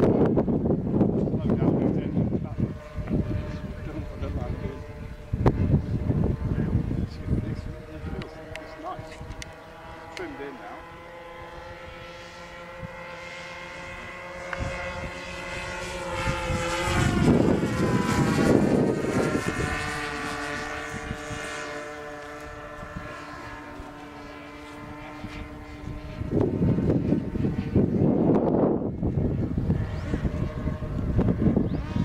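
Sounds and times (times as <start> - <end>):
model plane engines droning: 0.0 - 32.0
propeller rush: 0.0 - 32.0.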